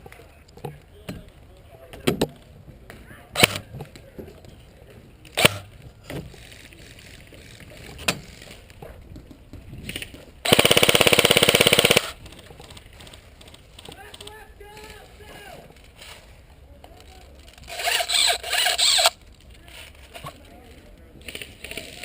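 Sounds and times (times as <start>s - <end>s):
sharp shots: 5.4s - 5.6s, 10.4s - 12.2s
airsoft gun full-auto burst: 10.4s - 12.2s, 17.7s - 19.2s.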